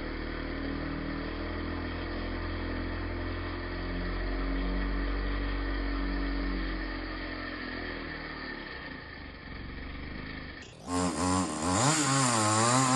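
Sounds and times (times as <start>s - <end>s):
chainsaw cutting: 0.0s - 12.9s
engine running at low revs: 0.0s - 12.9s.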